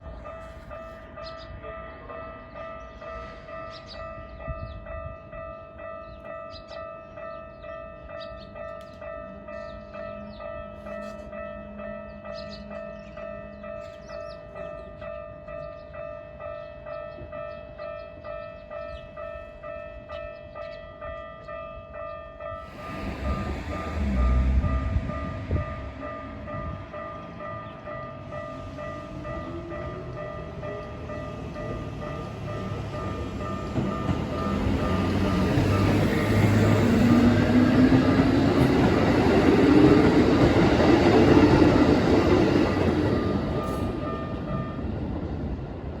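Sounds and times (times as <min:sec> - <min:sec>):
electric train rumble: 0:22.4 - 0:46.0.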